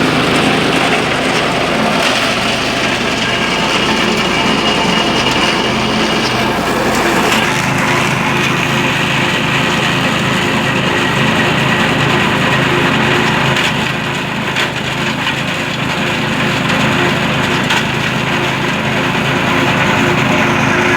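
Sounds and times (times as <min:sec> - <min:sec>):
engine humming: 0:00.0 - 0:20.9.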